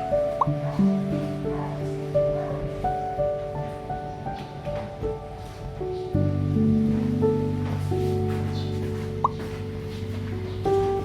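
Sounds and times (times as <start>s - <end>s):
soft instrumental music: 0.0s - 11.0s.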